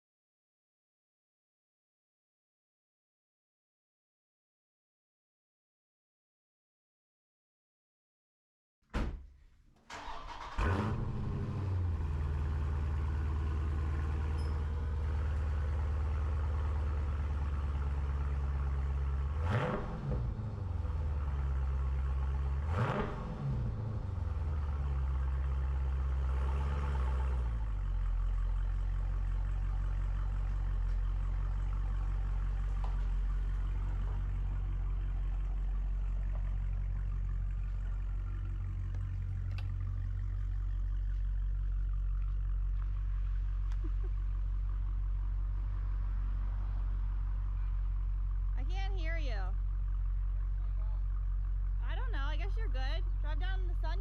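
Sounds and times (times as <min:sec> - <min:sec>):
car engine starting and idling: 0:09.8 - 0:54.0
car engine revving: 0:09.9 - 0:54.0.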